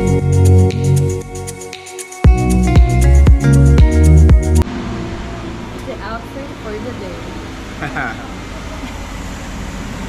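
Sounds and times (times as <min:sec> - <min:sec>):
electronic synth music: 0:00.0 - 0:04.6.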